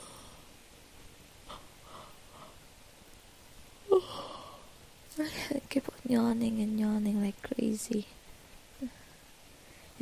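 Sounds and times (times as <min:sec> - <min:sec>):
woman breathing softly: 0:00.0 - 0:00.6, 0:01.4 - 0:02.7, 0:03.9 - 0:04.8, 0:08.8 - 0:10.0.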